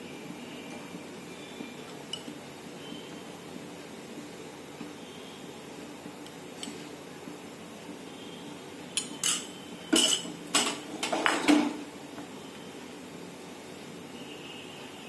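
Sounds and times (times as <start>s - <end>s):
metal cookware clanking: 9.0s - 11.7s.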